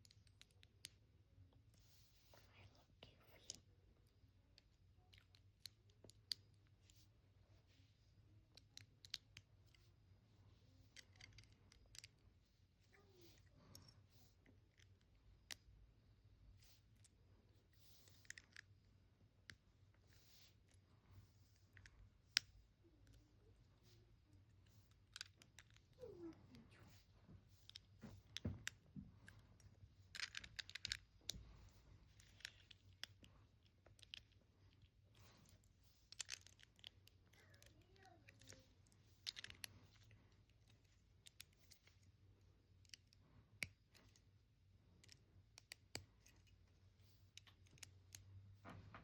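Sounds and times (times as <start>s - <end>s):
plastic bricks clicking together: 27.7s - 31.4s, 39.2s - 40.1s.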